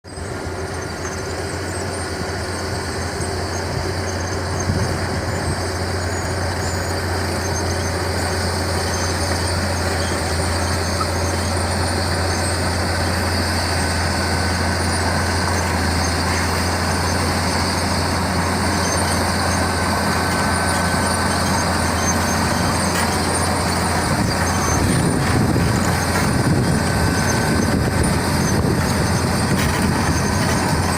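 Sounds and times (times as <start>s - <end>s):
bulldozer diesel engine running: 0.0s - 30.9s.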